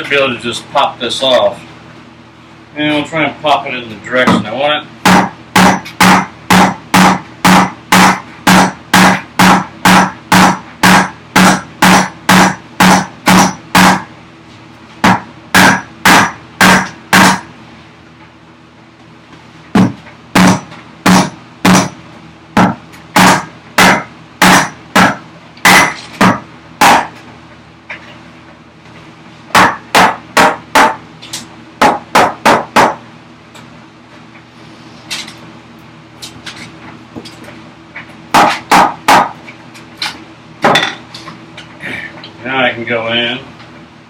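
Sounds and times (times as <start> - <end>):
hammer striking a chisel: 5.1 - 14.1, 15.0 - 17.5, 19.8 - 22.0, 22.6 - 27.2, 29.6 - 31.0, 31.8 - 33.0, 38.4 - 39.4.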